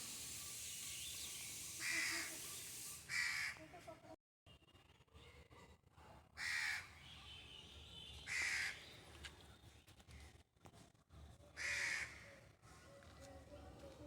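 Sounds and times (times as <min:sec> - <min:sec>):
bird giving harsh calls: 0:01.8 - 0:02.4.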